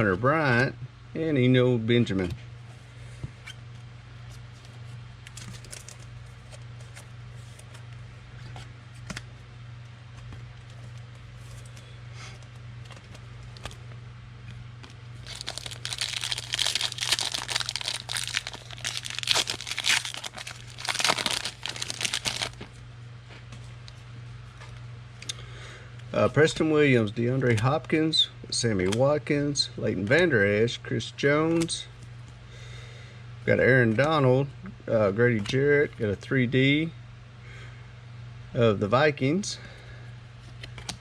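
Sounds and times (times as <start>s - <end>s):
steady low hum: 0.0s - 41.0s
foil pack crinkling and tearing: 5.2s - 7.0s, 14.8s - 22.8s.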